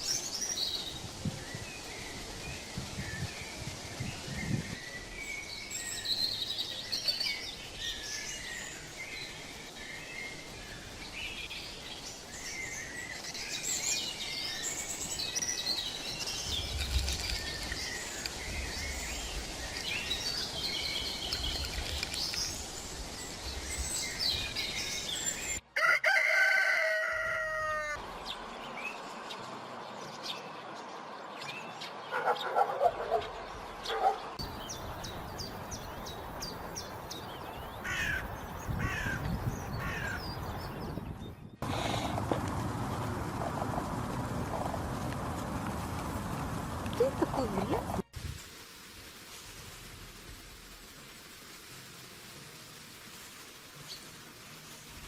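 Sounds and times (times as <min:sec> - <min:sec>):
birds chirping and trilling: 0:00.0 - 0:25.6, 0:26.7 - 0:43.2
mountain stream hiss: 0:00.0 - 0:25.9, 0:34.4 - 0:40.1, 0:41.6 - 0:55.0
rooster crowing: 0:25.7 - 0:28.0
harsh low bird calls: 0:37.6 - 0:42.1.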